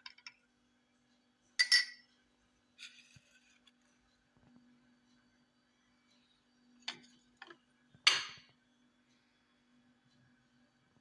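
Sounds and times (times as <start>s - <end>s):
glassware clinking: 1.6s - 2.0s.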